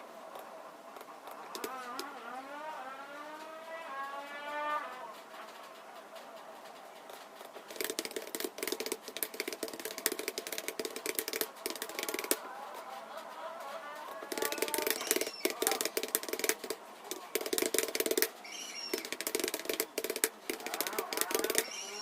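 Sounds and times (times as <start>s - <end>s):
computer keyboard typing: 1.5s - 2.1s, 7.1s - 12.5s, 14.1s - 22.0s.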